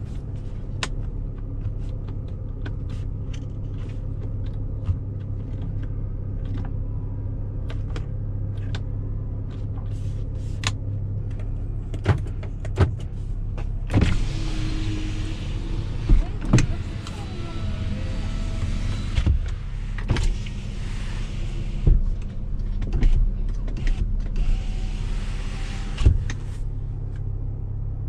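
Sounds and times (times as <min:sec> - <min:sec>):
knocks and rattles in cabin: 0:00.0 - 0:07.0, 0:10.7 - 0:15.0, 0:15.7 - 0:21.0, 0:21.6 - 0:24.5, 0:25.8 - 0:26.5
engine humming in car cabin: 0:00.0 - 0:28.0.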